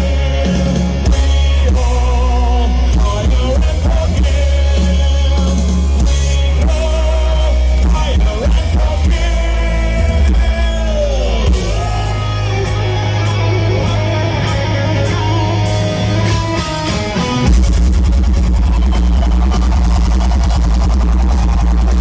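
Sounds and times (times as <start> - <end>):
person singing: 0.0 - 17.4
distorted live metal music: 0.0 - 22.0
drums: 0.0 - 22.0
electric guitars: 0.0 - 22.0.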